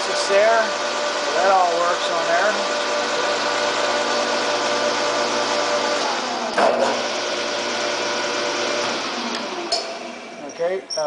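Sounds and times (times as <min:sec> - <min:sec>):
lathe motor humming: 0:00.0 - 0:10.9
lathe clunk: 0:06.5 - 0:07.1.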